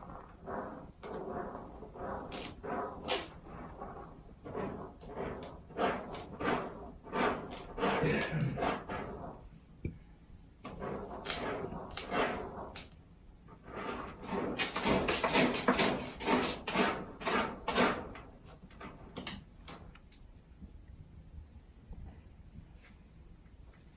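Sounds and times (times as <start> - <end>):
cat scratching: 0.0 - 9.5, 10.6 - 20.2.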